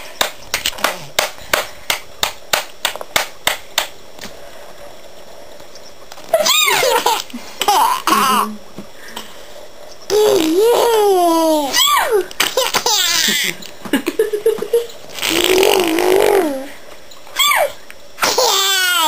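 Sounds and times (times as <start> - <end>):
baby squealing: 6.3 - 6.9, 11.6 - 12.2, 17.4 - 19.0
baby laughing: 6.3 - 8.6, 10.1 - 16.7, 17.4 - 19.0.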